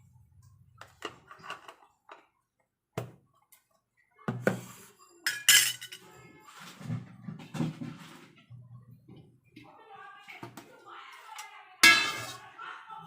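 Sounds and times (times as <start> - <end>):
utensils and dishes clinking: 1.0 - 2.2, 4.6 - 7.0, 11.2 - 12.6.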